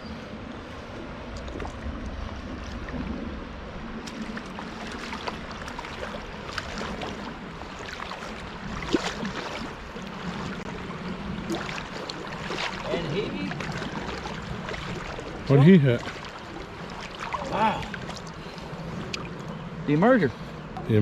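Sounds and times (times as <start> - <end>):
creek water running: 0.4 - 21.0
light splashing: 4.0 - 19.5.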